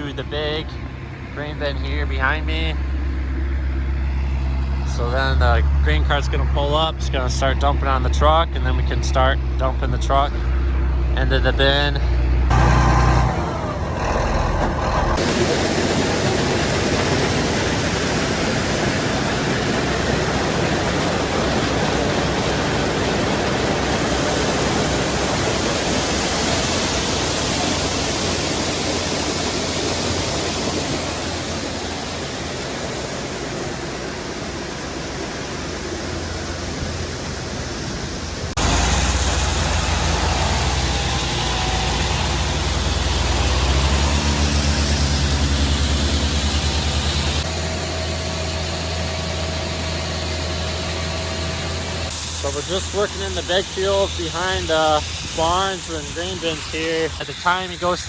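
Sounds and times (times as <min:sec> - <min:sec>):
deep engine rumble: 0:00.0 - 0:58.0
diesel farm machinery running: 0:00.0 - 0:58.0
steady rushing noise: 0:14.8 - 0:47.5, 0:52.0 - 0:58.0.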